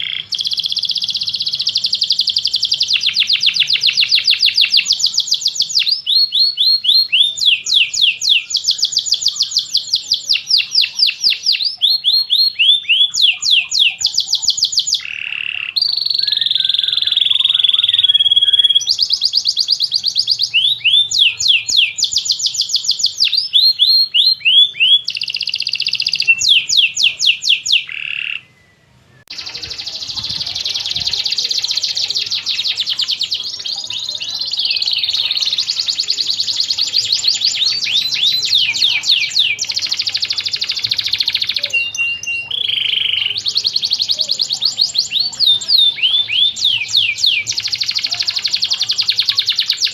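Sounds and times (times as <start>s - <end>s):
canary singing trills: 0.0s - 49.9s.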